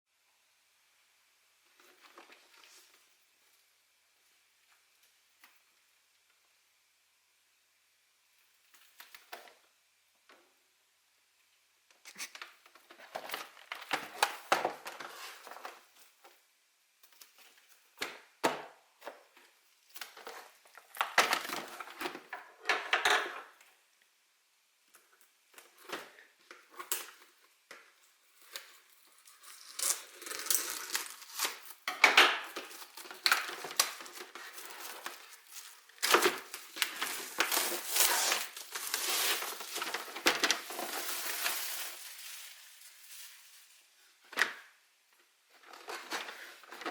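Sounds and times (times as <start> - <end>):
packaging crinkling and tearing: 28.4 - 43.8.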